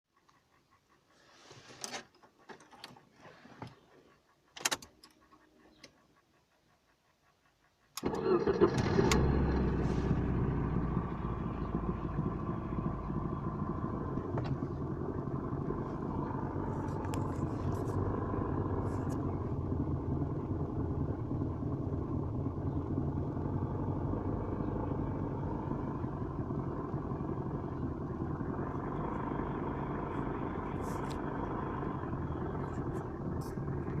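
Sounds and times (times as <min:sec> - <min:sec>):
car engine running: 0:02.5 - 0:34.0.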